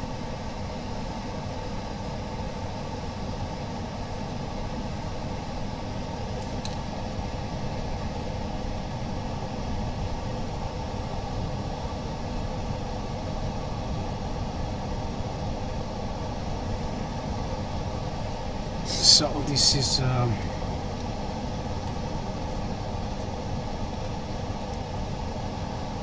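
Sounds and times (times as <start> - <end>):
laminating machine humming: 4.9 - 26.0.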